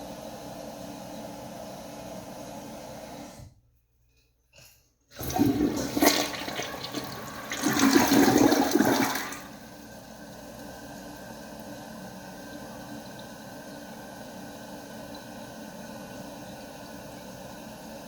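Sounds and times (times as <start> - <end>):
toilet flushing: 5.1 - 18.0.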